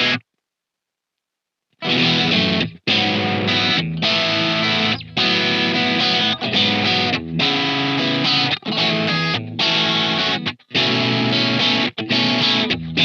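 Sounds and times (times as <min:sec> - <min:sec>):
distorted electric guitar strumming: 0:00.0 - 0:00.2, 0:01.8 - 0:13.0.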